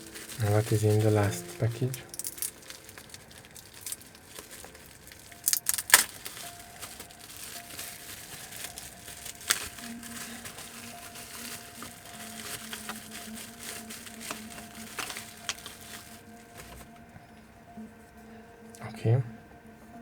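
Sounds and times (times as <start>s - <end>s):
plastic bag crinkling: 0.0s - 17.3s.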